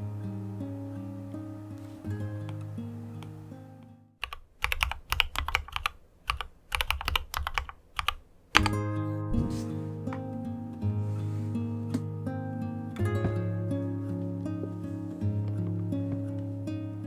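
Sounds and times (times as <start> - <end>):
soft guitar music: 0.0 - 4.2, 8.6 - 17.0
typing on a keyboard: 4.2 - 8.7.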